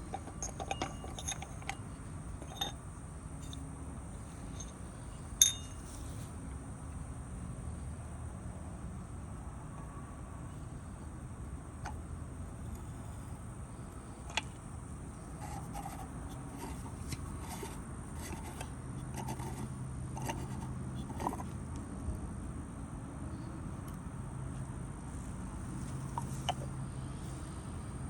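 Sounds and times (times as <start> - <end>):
hard parts clicking and scraping: 0.0 - 2.8, 3.4 - 6.2, 14.2 - 21.6, 25.7 - 26.7
outdoor background hiss: 0.0 - 28.0.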